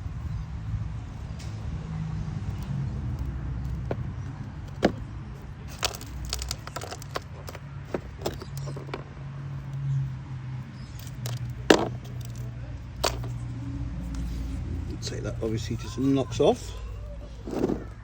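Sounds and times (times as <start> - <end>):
stones clicking and knocking: 2.6 - 9.1, 10.9 - 13.4.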